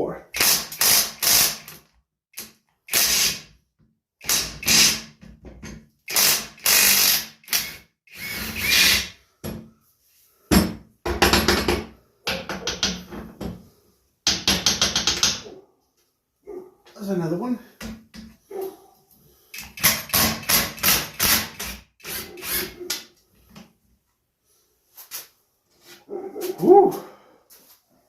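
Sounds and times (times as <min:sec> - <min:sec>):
power tool bursts: 0:06.1 - 0:09.1.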